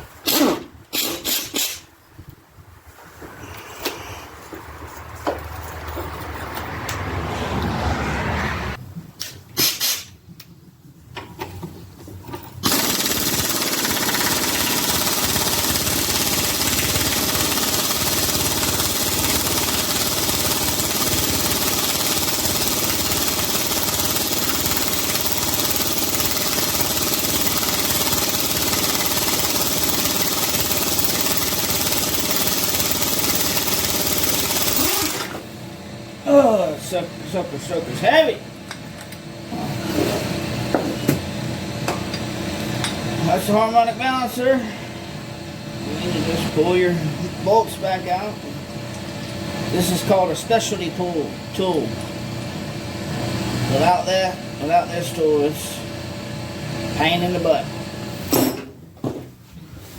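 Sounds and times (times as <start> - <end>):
impact wrench hammering: 12.6 - 35.4.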